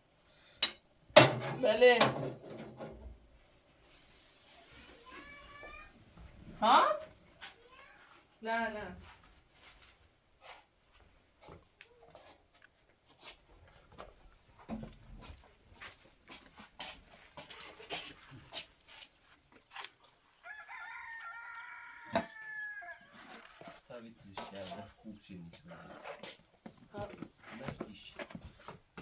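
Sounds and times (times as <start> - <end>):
rooster crowing: 20.4 - 23.4.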